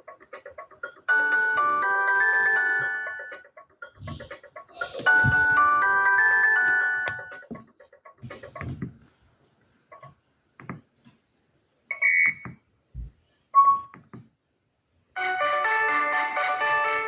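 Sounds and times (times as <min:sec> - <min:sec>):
polyphonic ringtone: 0:01.1 - 0:03.5, 0:04.1 - 0:07.9.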